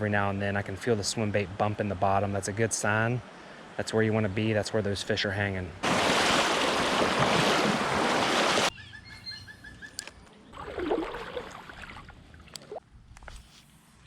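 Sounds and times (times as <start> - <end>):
creek water rushing: 5.8 - 8.7
water sloshing: 5.8 - 8.7, 10.6 - 12.8.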